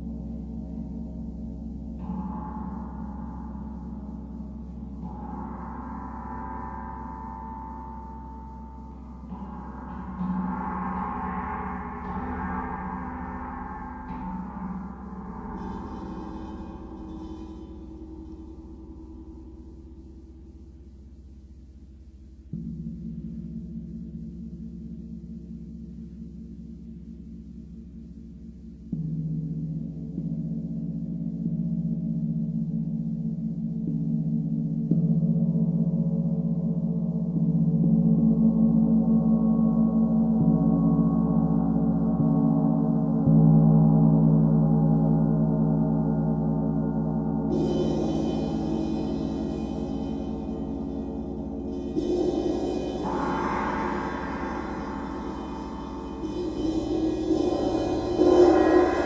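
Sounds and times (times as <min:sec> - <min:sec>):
gong ringing: 0:13.6 - 0:18.7, 0:47.5 - 0:59.0.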